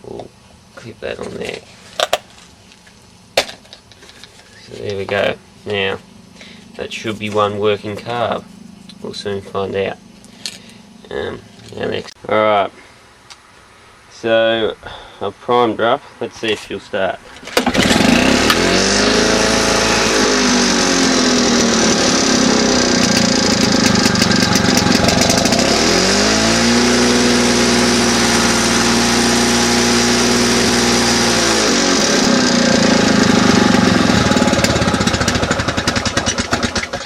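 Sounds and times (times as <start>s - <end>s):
lawn mower engine running: 17.4s - 37.0s.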